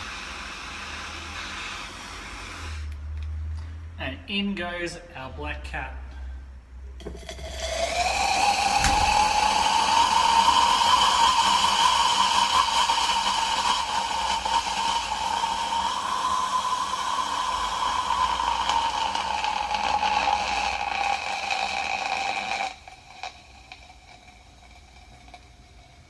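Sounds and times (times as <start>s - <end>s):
hissing flame with shrill whistle: 0.0s - 2.9s, 7.7s - 23.9s.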